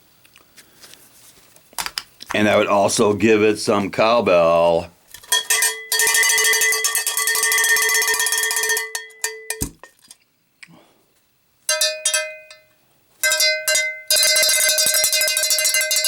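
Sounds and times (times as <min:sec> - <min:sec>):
cowbell hits: 0:05.2 - 0:09.8, 0:11.7 - 0:16.0.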